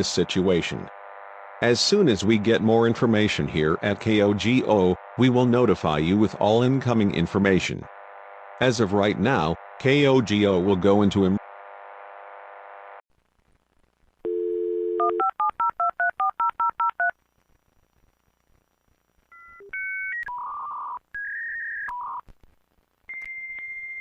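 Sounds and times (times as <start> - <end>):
telephone dial tone: 14.3 - 17.1.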